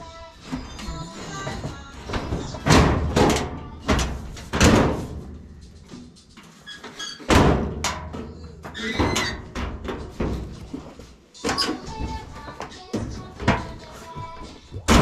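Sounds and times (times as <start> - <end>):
metal panels knocking: 1.4 - 5.4, 7.3 - 15.0.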